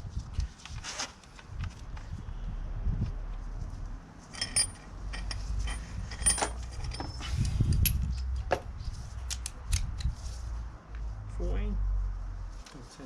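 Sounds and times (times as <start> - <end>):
rustle of handling: 0.0 - 2.4, 10.0 - 11.2, 12.0 - 13.0
small metal parts clinking: 4.3 - 8.2.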